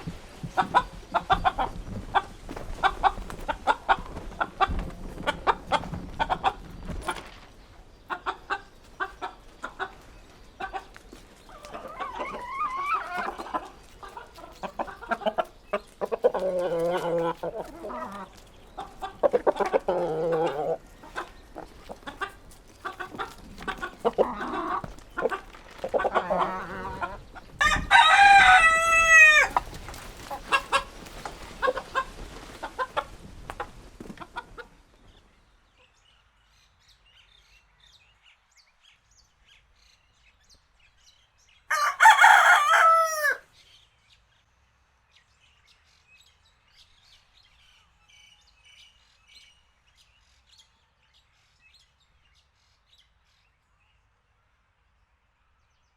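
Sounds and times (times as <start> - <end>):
chickens clucking: 0.0 - 36.0
rooster crowing: 27.6 - 29.6, 41.7 - 43.5.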